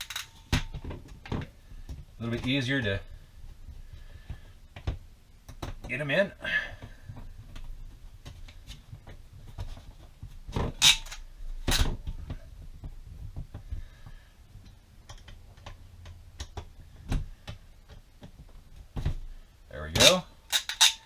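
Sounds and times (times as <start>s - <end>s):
small metal clicks and clatter: 0.0s - 0.4s.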